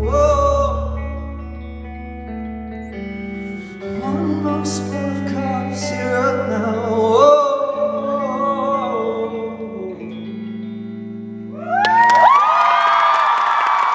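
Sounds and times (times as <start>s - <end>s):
ringing guitar chord: 1.3s - 11.6s
person singing wavering note: 3.4s - 10.1s
audience screaming and cheering: 11.6s - 13.9s.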